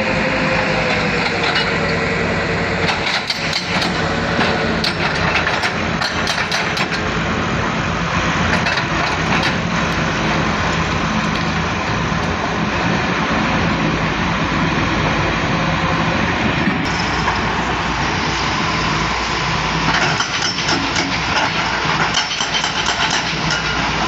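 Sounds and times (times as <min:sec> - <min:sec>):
excavator diesel engine running: 0:00.0 - 0:22.0
sharp clacks and knocks: 0:02.9 - 0:07.6, 0:08.4 - 0:12.6.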